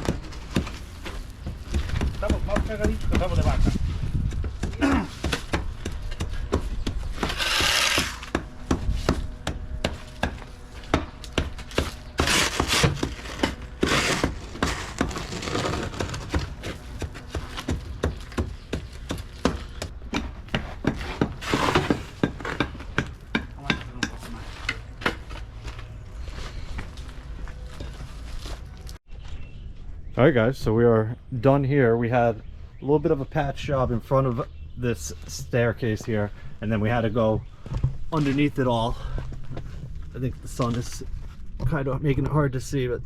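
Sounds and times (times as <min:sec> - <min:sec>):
shovels and rakes scraping: 0:07.1 - 0:09.4, 0:10.0 - 0:17.8, 0:20.6 - 0:22.7.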